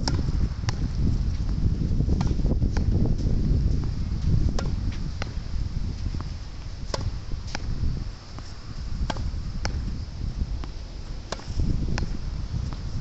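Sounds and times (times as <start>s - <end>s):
tennis ball hitting wall: 0.0s - 0.9s, 2.1s - 3.0s, 4.4s - 5.4s, 6.8s - 7.8s, 8.4s - 9.9s, 10.6s - 12.9s
wind rumbling on microphone: 0.0s - 13.0s.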